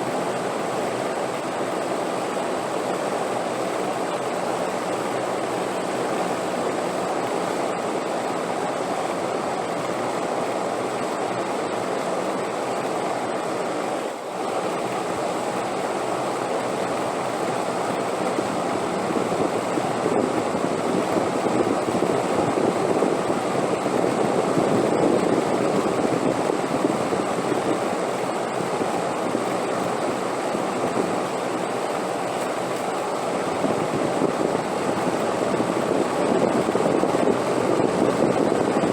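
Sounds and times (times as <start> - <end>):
rushing wind: 16.4 - 38.9.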